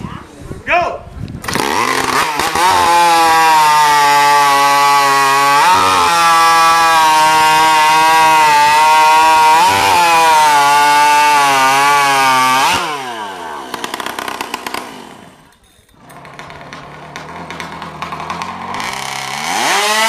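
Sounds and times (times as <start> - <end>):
chainsaw engine whining at high revs: 1.4 - 20.0
engine winding down: 14.1 - 20.0.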